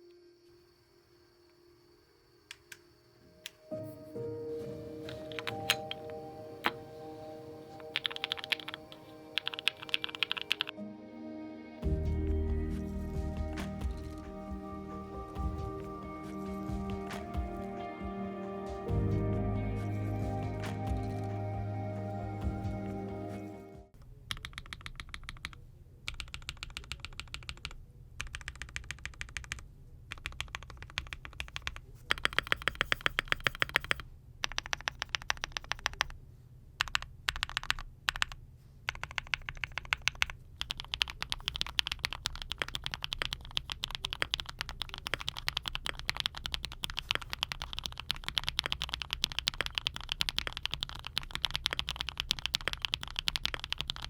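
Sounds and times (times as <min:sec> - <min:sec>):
mechanical keyboard typing: 0:05.1 - 0:06.8, 0:07.8 - 0:10.7, 0:24.3 - 0:36.2, 0:36.8 - 0:54.0.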